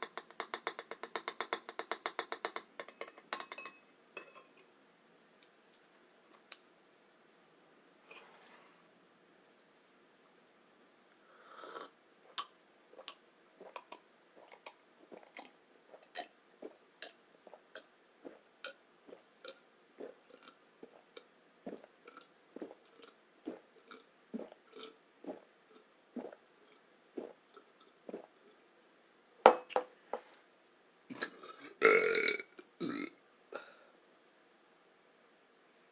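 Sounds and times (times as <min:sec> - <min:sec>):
wet chewing sounds: 0:12.3 - 0:28.3
loud burp: 0:31.1 - 0:33.2.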